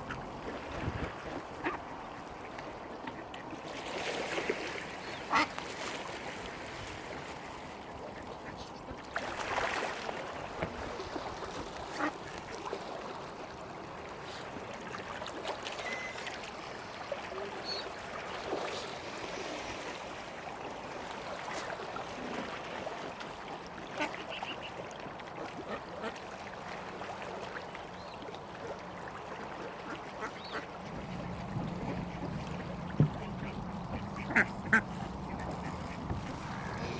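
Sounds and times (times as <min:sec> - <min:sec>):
ducks quacking: 0:05.3 - 0:05.5, 0:31.8 - 0:36.9.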